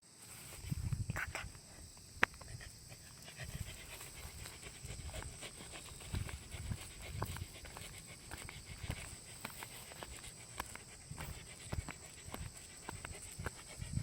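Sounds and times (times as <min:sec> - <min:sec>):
dog panting: 0:02.4 - 0:14.0.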